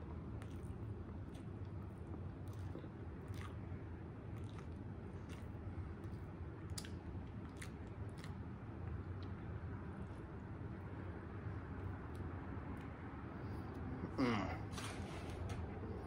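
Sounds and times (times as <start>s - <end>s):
low steady hum: 0.0s - 16.0s
person chewing food: 0.1s - 9.4s.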